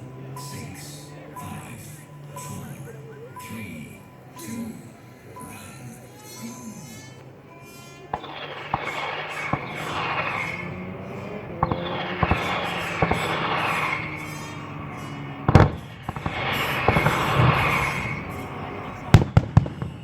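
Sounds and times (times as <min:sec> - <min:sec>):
music: 0:00.0 - 0:20.0
fireworks hiss: 0:06.3 - 0:20.0
fireworks popping: 0:07.6 - 0:20.0
loud firework bang: 0:08.2 - 0:20.0.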